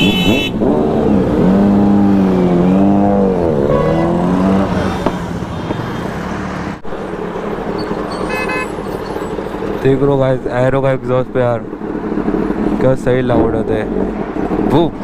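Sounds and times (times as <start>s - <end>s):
loud engine revving: 0.0s - 5.5s.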